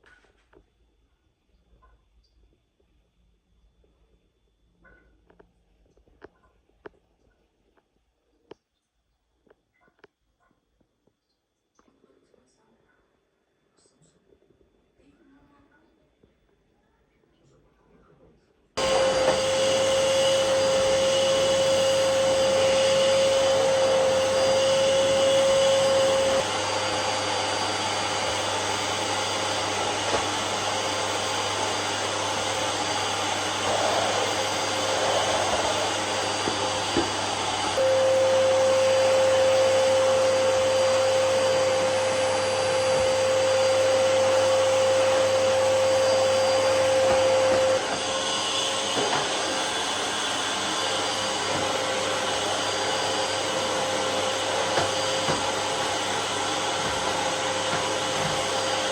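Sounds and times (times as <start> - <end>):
vacuum cleaner whining: 18.8 - 58.9.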